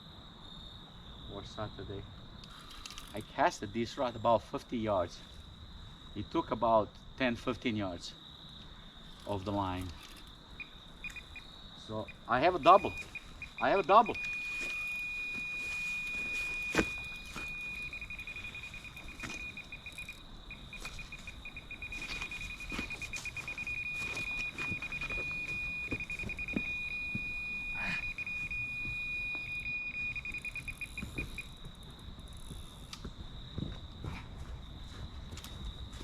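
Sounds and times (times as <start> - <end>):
bite alarm tone and beeps: 10.6 - 31.5.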